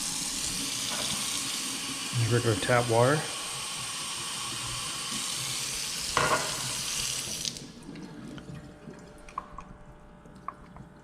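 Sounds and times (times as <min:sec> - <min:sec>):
tap running water into cup: 0:00.7 - 0:01.9, 0:06.1 - 0:07.6, 0:08.3 - 0:09.8.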